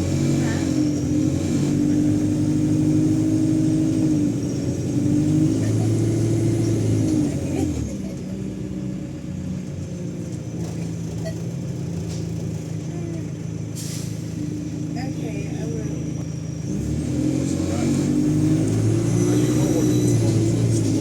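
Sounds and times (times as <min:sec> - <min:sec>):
bus engine pulling: 0:00.0 - 0:21.0
faint turbo whine: 0:17.6 - 0:21.0.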